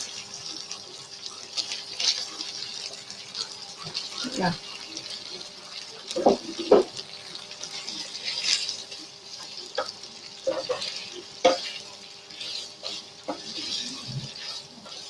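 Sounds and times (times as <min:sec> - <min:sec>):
noodles sizzling in a pan: 0:00.0 - 0:15.0
spatula scraping and knocking pan: 0:10.5 - 0:15.0.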